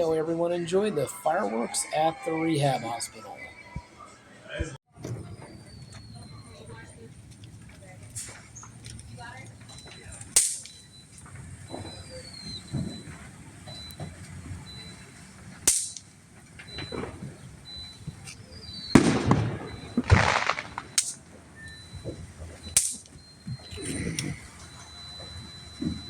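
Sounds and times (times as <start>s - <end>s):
rushing crackle of fireworks: 5.0s - 26.0s
fireworks bangs: 9.6s - 23.7s.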